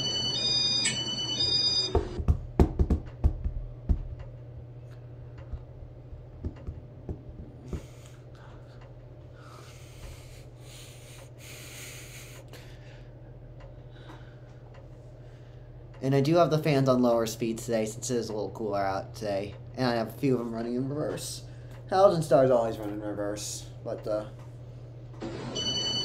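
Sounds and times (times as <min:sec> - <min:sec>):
ceiling fan motor humming: 0:00.0 - 0:26.0
sharp knocks and clicks: 0:02.0 - 0:04.5, 0:05.4 - 0:08.0.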